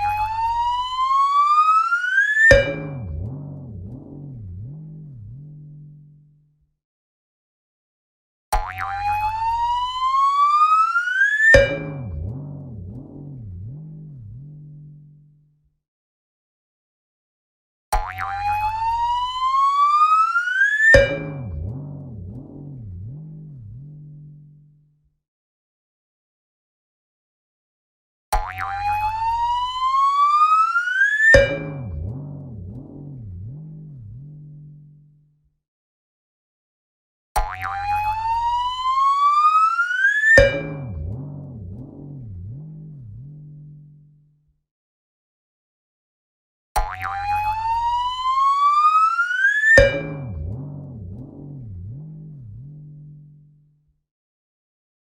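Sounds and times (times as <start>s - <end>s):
wobbling boing twang: 2.5s - 6.0s, 11.5s - 14.0s, 20.9s - 22.8s, 31.3s - 33.0s, 40.4s - 42.2s, 46.8s - 47.7s, 49.8s - 51.6s.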